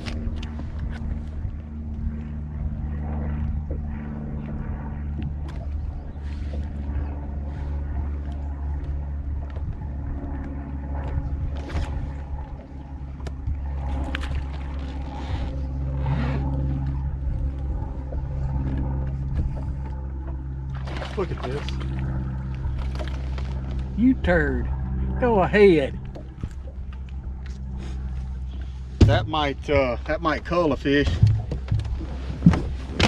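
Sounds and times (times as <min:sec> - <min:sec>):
boat motor humming: 0:00.0 - 0:33.0
knocks and splashes: 0:10.4 - 0:15.2, 0:18.1 - 0:23.9, 0:29.0 - 0:29.9, 0:31.0 - 0:33.0.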